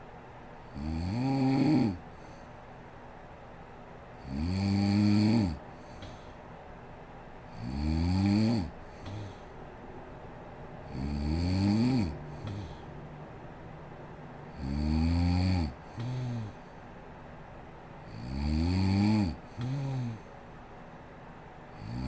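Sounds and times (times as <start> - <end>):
woman snoring: 0.7 - 2.0, 4.2 - 6.3, 7.5 - 9.5, 10.9 - 12.9, 14.5 - 16.7, 18.1 - 20.3, 21.8 - 22.0.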